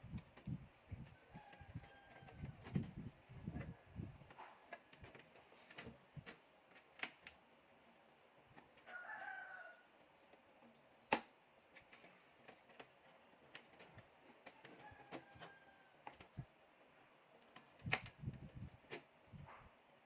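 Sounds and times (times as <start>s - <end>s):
sharp clicks of computer parts: 4.3s - 7.4s, 10.9s - 12.9s, 17.5s - 19.1s
rooster crowing: 8.8s - 9.9s, 14.8s - 16.1s.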